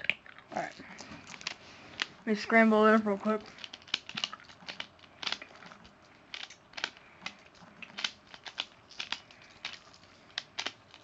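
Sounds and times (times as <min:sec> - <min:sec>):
plastic puzzle pieces clicking: 0:03.5 - 0:11.0.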